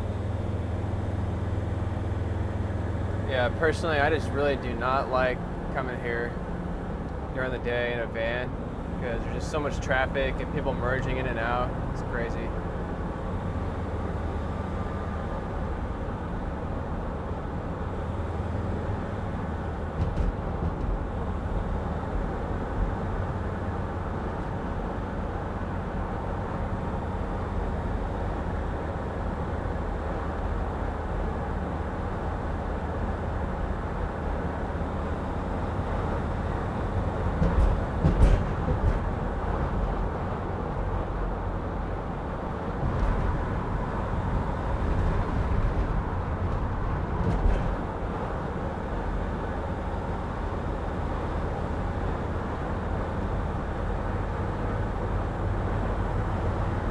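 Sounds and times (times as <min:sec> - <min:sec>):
van road and engine rumble: 0:00.0 - 0:56.9
knocks: 0:37.4 - 0:39.2.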